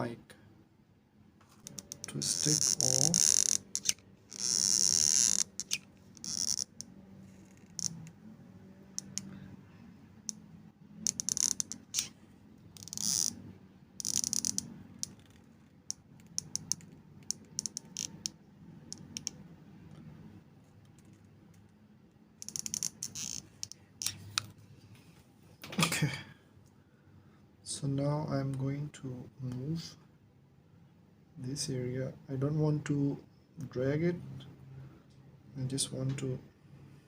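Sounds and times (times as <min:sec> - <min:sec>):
small wires and parts rustling: 0:01.4 - 0:08.2.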